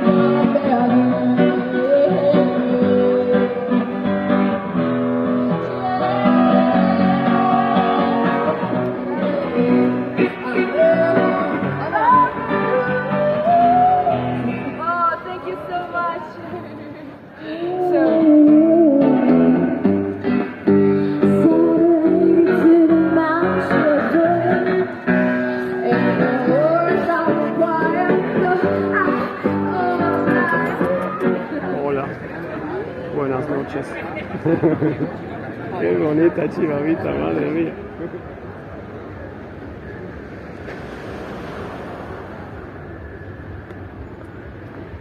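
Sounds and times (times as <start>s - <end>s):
person singing: 0.0s - 4.0s, 5.5s - 16.8s, 17.4s - 19.8s, 21.1s - 31.6s
acoustic guitar playing: 0.0s - 16.8s, 17.5s - 32.2s.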